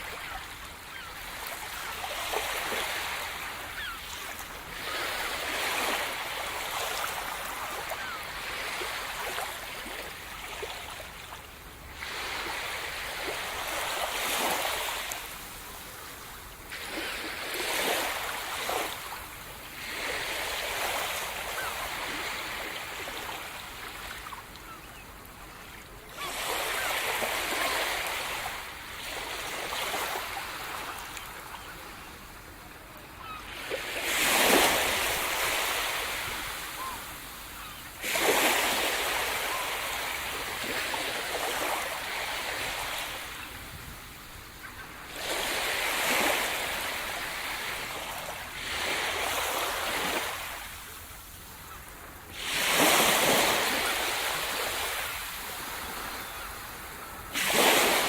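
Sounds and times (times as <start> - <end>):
sea surf breaking on shore: 52.0 - 58.0.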